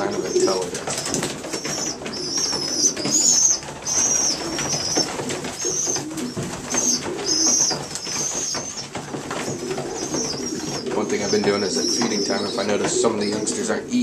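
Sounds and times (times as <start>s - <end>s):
pigeon cooing: 0.0s - 14.0s
young pigeons squeaking: 0.0s - 14.0s.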